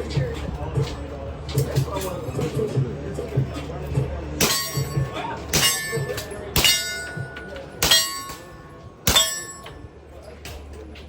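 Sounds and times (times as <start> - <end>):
bullet ringing on steel target: 4.4 - 9.9.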